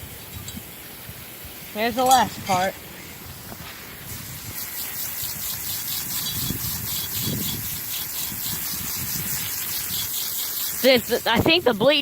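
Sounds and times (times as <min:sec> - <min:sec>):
hose spraying water: 0:00.0 - 0:12.0.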